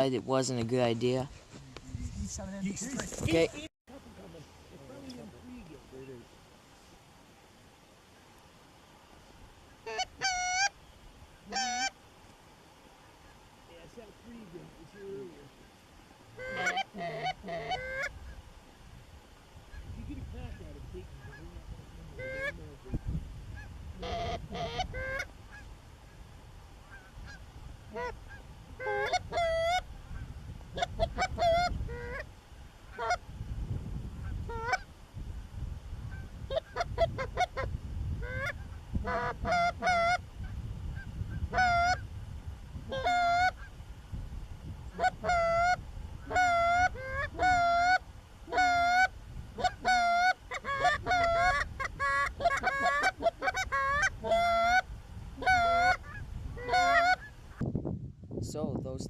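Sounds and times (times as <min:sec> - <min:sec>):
geese honking: 0:09.6 - 0:12.0, 0:16.3 - 0:18.5, 0:19.6 - 0:33.3, 0:34.2 - 0:34.9, 0:36.0 - 0:42.1, 0:42.9 - 0:43.8, 0:44.9 - 0:57.6.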